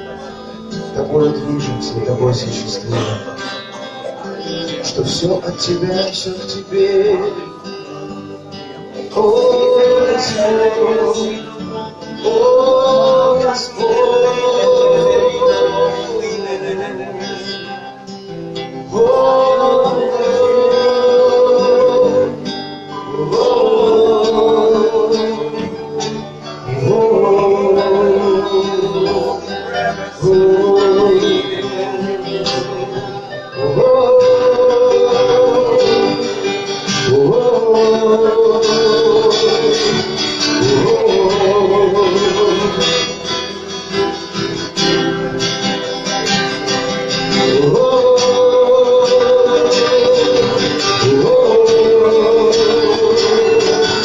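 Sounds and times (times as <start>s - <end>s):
guitar: 0.0s - 54.0s
person singing long held notes: 47.4s - 54.0s.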